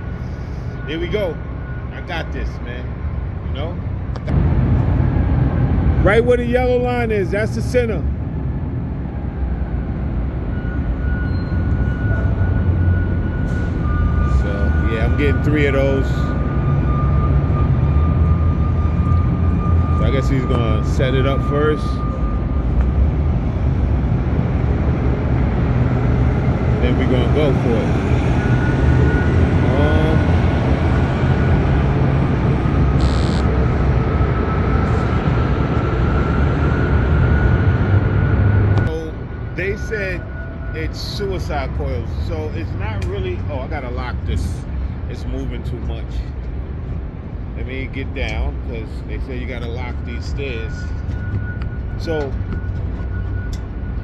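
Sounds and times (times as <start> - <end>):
thin steady whine: 0.0 - 4.9, 10.5 - 54.0
low mechanical rumble: 0.0 - 10.7, 16.3 - 40.9
diesel engine droning: 0.0 - 54.0
higher tone: 25.9 - 43.3.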